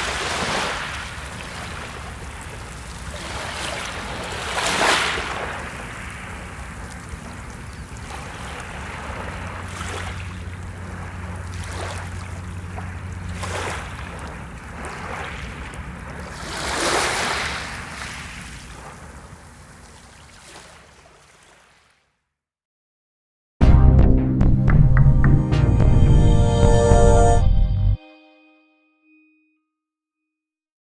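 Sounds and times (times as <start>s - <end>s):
ocean waves washing on shore: 0.0s - 21.5s.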